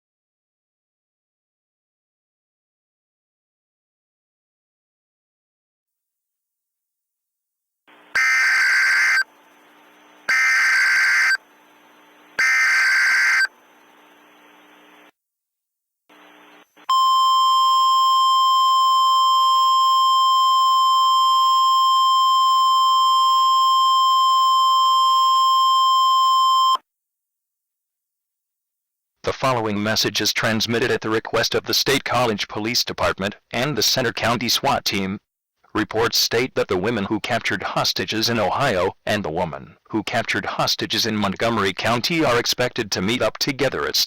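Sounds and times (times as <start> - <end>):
shrill digital tone bursts: 8.2 - 9.3, 10.3 - 11.4, 12.4 - 13.5.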